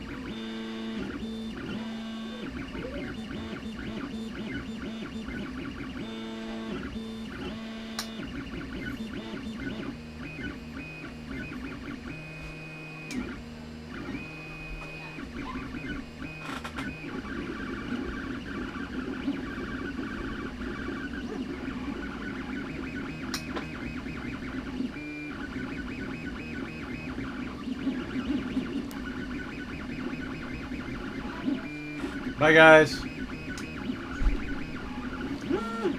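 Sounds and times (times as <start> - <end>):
stepper motors whining: 0.0 - 35.9
sharp clicks: 7.9 - 8.2, 33.4 - 33.8.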